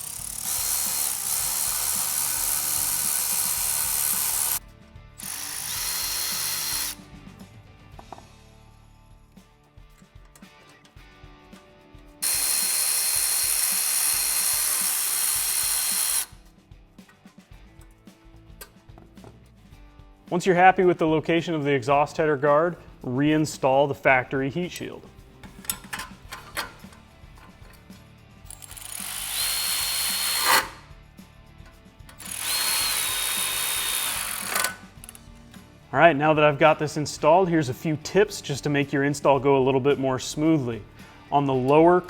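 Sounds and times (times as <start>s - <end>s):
cordless power driver whining: 0.0s - 4.6s, 5.2s - 7.0s, 12.2s - 16.4s, 28.5s - 30.9s, 32.1s - 35.2s.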